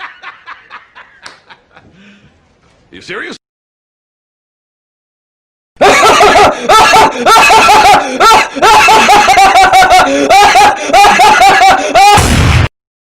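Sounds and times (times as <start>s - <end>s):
high-pitched rapid laugh: 5.8s - 12.2s.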